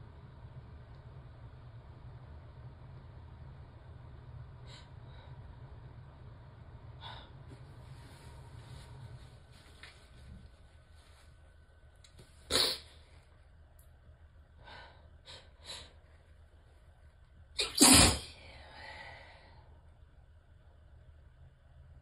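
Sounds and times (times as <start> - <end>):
woman sneezing: 12.5 - 12.9, 17.6 - 18.4.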